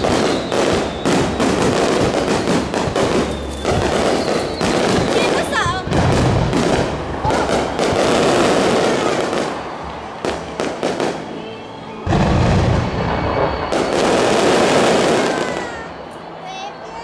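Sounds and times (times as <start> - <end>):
deep firework boom: 0.0 - 9.5, 12.0 - 15.7
fireworks sharp bangs: 0.0 - 16.1
fireworks crackling: 0.0 - 17.0.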